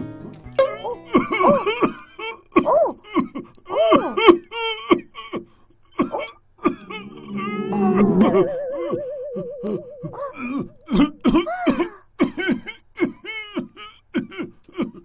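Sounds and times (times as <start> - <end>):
person coughing: 1.1 - 4.3, 10.9 - 13.2
person moaning: 6.7 - 11.3.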